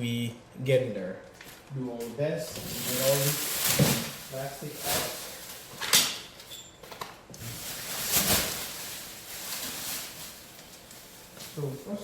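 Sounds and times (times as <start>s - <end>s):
plastic wrapping rustling: 2.4s - 12.0s.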